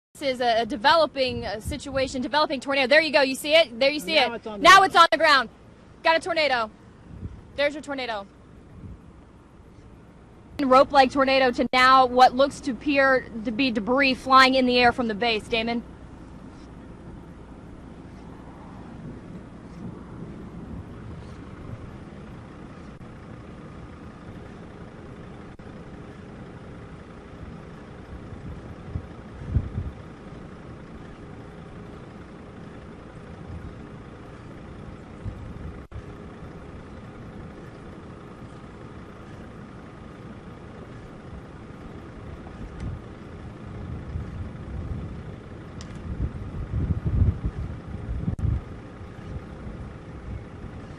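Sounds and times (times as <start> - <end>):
faint constant hum: 0.2 - 50.9
steady low rumble: 0.2 - 50.9
wind buffeting thumps: 6.1 - 7.7, 8.6 - 9.3, 15.5 - 25.3, 27.4 - 32.2, 33.0 - 36.2, 42.2 - 50.9.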